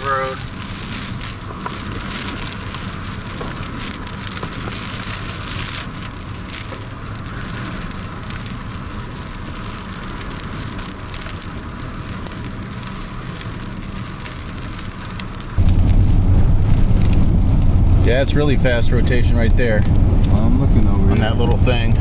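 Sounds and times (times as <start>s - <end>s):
low vehicle hum: 0.0s - 22.0s
rain hitting a vehicle: 0.0s - 22.0s.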